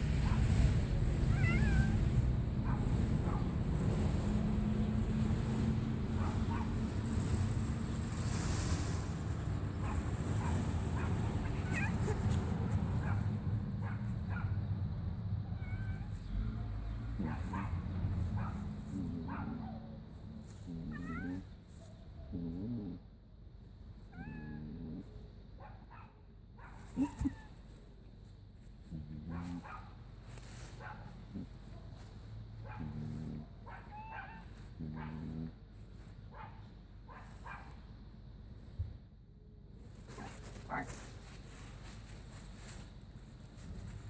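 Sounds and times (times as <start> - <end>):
steady low rumble: 0.0 - 21.6
cat mewing: 1.2 - 2.3, 11.4 - 12.4, 15.5 - 16.2, 20.7 - 21.5, 24.1 - 25.0, 26.9 - 27.6, 33.6 - 35.4.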